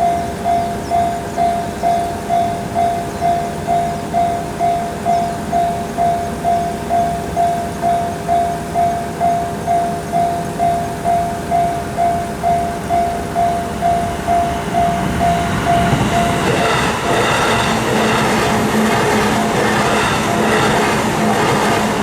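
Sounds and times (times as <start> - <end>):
level crossing bell ringing: 0.0 - 17.4
train running noise: 0.0 - 22.0.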